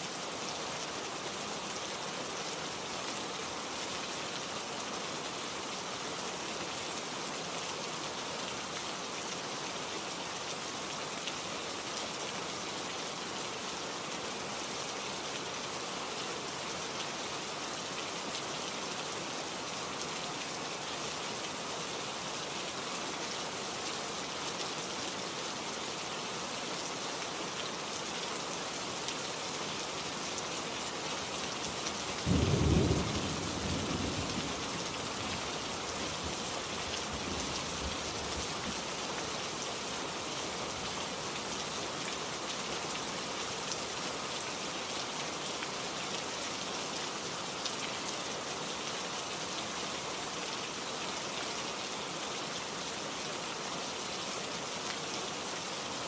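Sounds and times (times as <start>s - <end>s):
steady rain falling: 0.0s - 56.0s
low roll of thunder: 32.3s - 34.6s.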